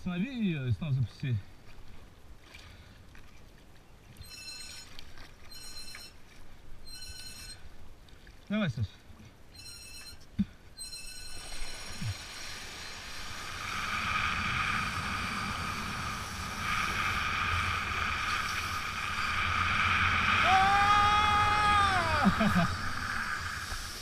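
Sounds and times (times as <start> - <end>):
water rushing: 11.5 - 24.0
wind rushing: 12.5 - 24.0.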